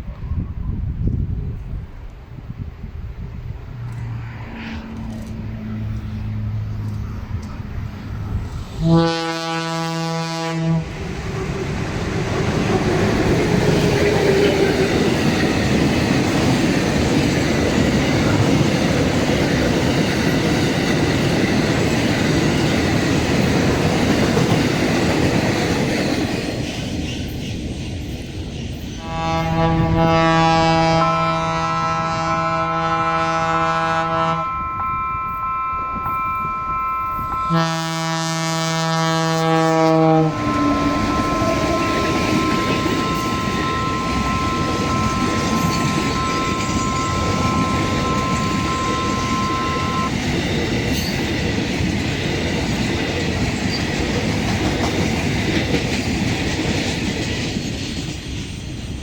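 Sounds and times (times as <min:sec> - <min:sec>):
freight train rolling past: 0:00.0 - 0:59.0
locomotive air horn: 0:08.8 - 0:11.0, 0:29.0 - 0:50.1
wheels clattering on rail: 0:10.9 - 0:29.5, 0:40.3 - 0:59.0
thin high whine: 0:34.2 - 0:38.6, 0:40.3 - 0:50.1.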